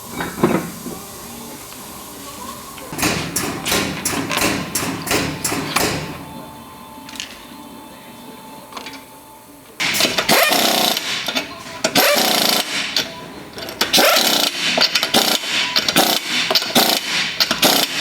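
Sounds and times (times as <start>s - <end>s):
impact gun bursts: 3.0s - 6.2s, 9.8s - 13.0s, 14.0s - 18.0s.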